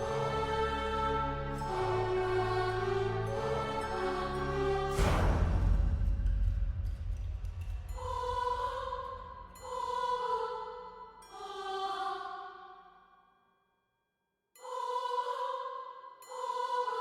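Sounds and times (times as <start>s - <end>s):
deep low rumble: 4.9s - 9.6s.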